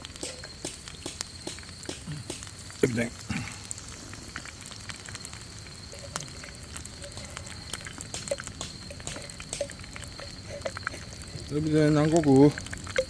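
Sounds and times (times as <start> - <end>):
food frying in hot oil: 0.0 - 13.0.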